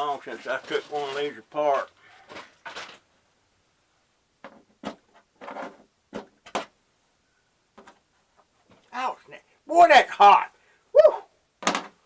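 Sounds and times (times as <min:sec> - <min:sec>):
parts knocking and scraping: 0:04.4 - 0:06.8.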